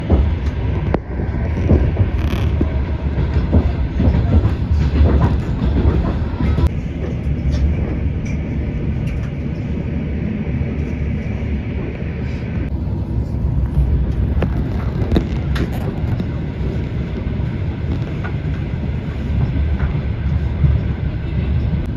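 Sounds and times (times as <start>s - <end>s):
knocks and clacks: 0.0s - 9.4s
vehicle rumble: 0.0s - 21.9s.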